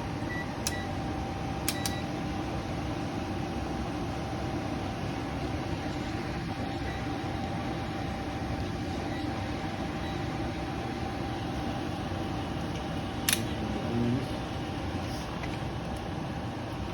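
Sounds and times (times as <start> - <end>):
gas furnace rumbling: 0.0 - 16.9
sharp click: 1.7 - 2.0, 13.2 - 13.5.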